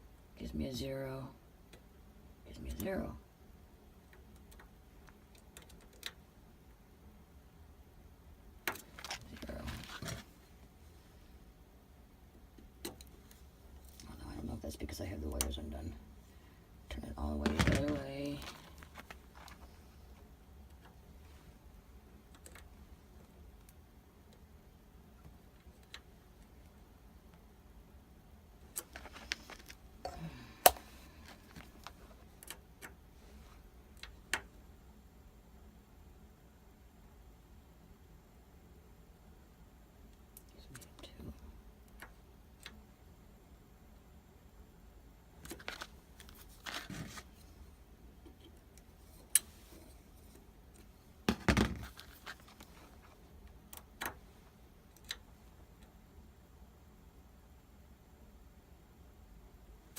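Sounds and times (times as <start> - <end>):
hands rustling and scraping: 8.8 - 10.5, 17.4 - 20.2, 28.8 - 29.8, 45.5 - 47.7.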